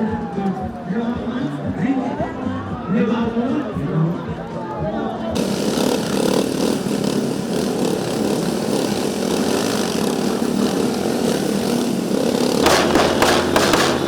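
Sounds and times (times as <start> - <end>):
engine running: 5.4 - 14.0.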